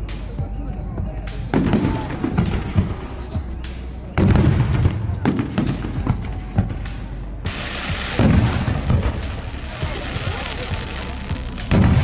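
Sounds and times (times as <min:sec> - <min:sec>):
fireworks bangs and crackles: 0:01.4 - 0:03.5, 0:04.2 - 0:12.0
deep fireworks booms: 0:04.2 - 0:06.8, 0:07.5 - 0:12.0.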